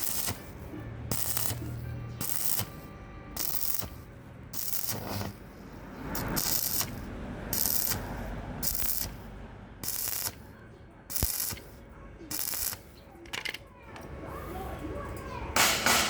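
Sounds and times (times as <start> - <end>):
welding arc crackling: 0.0 - 10.5, 11.1 - 13.0.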